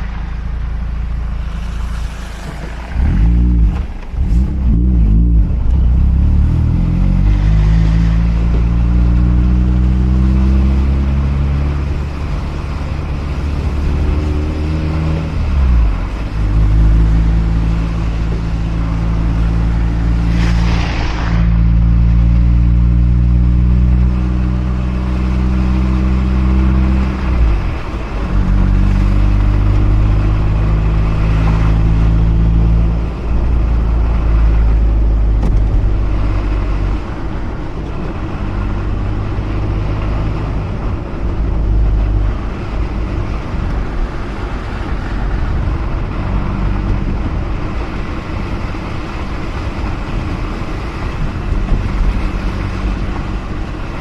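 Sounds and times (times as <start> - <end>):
short whoosh: 19.4 - 23.3.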